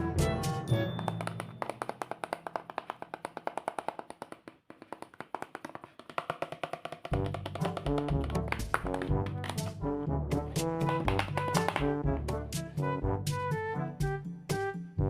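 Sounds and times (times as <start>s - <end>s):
bass-heavy music: 8.1s - 14.7s.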